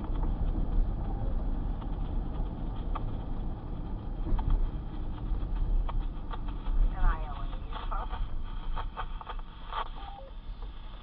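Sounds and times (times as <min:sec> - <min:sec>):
car engine rumble: 0:00.0 - 0:11.0
road noise inside car: 0:00.0 - 0:11.0.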